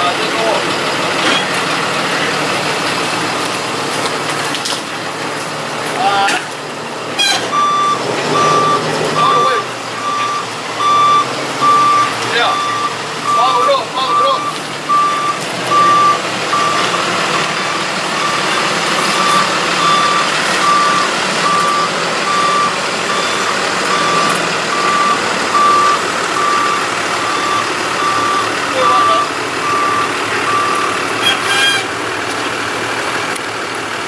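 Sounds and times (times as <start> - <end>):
truck engine running: 0.0 - 34.0
truck reverse alarm beeping: 7.1 - 32.0.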